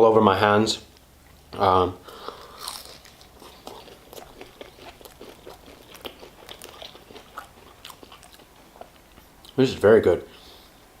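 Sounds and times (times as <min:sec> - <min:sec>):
chewing crunchy food: 0:02.1 - 0:09.6.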